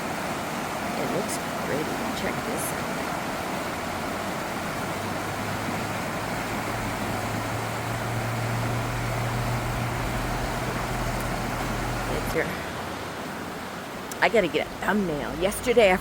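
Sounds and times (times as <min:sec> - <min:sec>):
low engine hum: 0:00.0 - 0:16.0
rushing background noise: 0:00.0 - 0:16.0.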